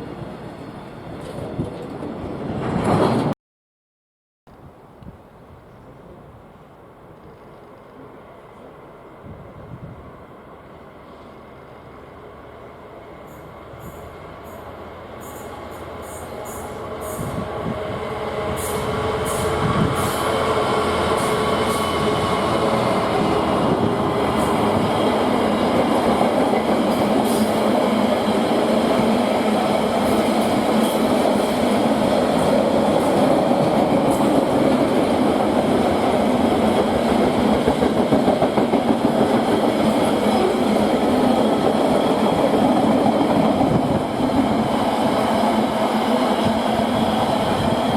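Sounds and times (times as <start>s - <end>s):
freight train rumbling on rails: 0.0s - 3.4s, 5.5s - 47.9s.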